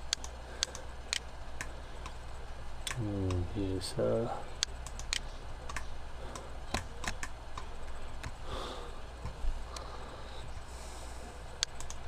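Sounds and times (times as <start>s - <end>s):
steady low hum: 0.0s - 12.0s
mouse and keyboard clicks: 4.6s - 8.4s, 11.6s - 12.0s
soft breath-like rush: 8.3s - 11.6s.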